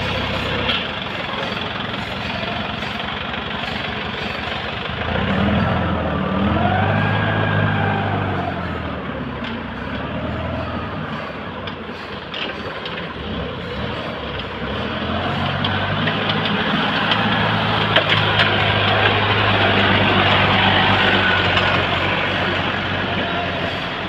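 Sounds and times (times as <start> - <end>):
sawmill machinery running: 0.0 - 24.0.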